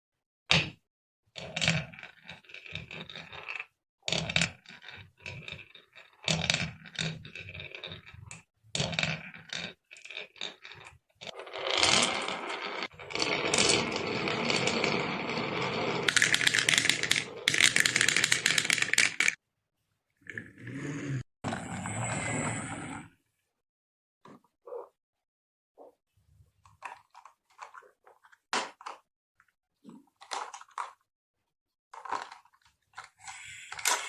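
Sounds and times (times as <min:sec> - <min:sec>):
marbles rolling and clattering: 0:01.4 - 0:19.4, 0:31.9 - 0:34.0.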